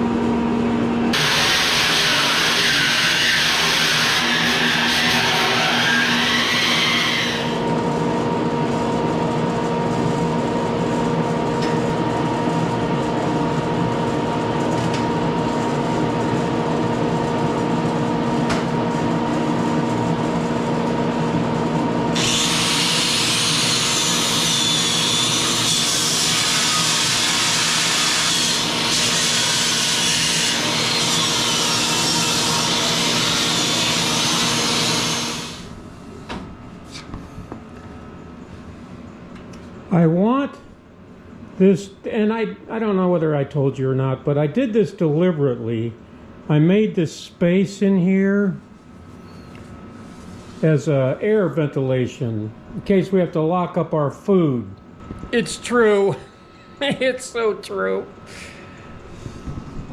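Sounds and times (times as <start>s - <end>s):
harsh cutting noise: 1.1s - 7.6s, 22.2s - 35.7s
power tool motor humming: 1.1s - 7.6s, 22.2s - 35.7s.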